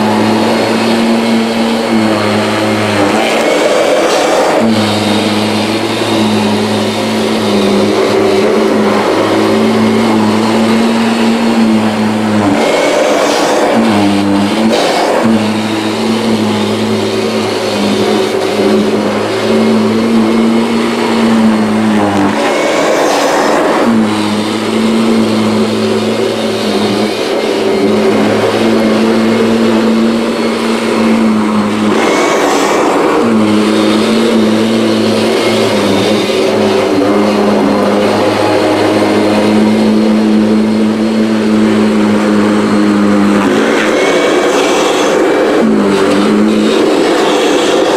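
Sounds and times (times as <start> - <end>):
upright vacuum cleaner running: 0.0 - 47.9.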